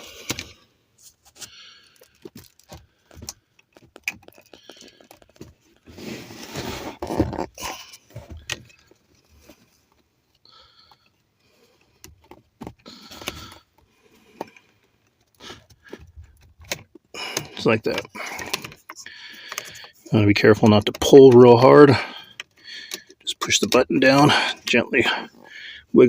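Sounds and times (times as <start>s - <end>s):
plastic clicks and rattles: 1.3s - 5.8s
scraping rustle: 5.2s - 8.5s.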